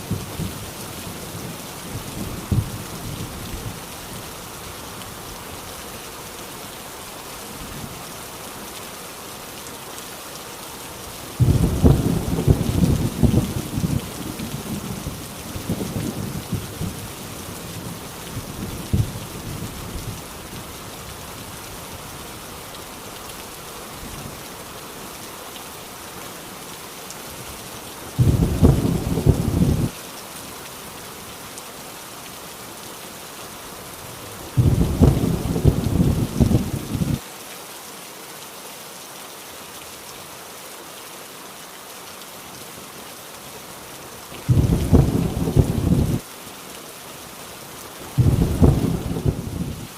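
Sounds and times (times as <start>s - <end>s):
heavy rain falling: 0.0s - 49.9s
thunder rumbling: 11.4s - 17.0s, 28.2s - 29.9s, 34.6s - 37.2s, 44.5s - 46.2s, 48.2s - 49.9s.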